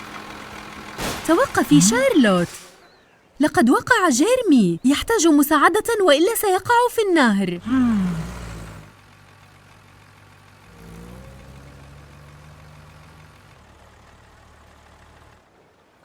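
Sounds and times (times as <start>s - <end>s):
cartoon vehicle engine: 0.0s - 2.8s, 3.5s - 15.5s.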